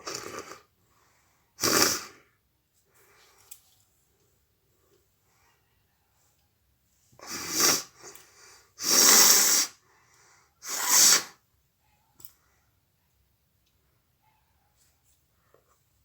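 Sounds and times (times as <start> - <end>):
sniffs and breaths: 0.0 - 3.6, 7.2 - 11.4
woman sneezing: 10.6 - 11.4.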